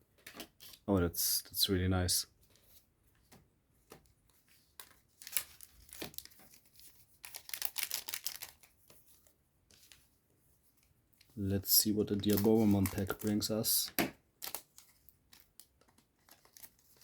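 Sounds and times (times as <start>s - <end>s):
wrapper tearing and crinkling: 4.8s - 8.7s, 12.0s - 13.8s, 14.4s - 17.0s.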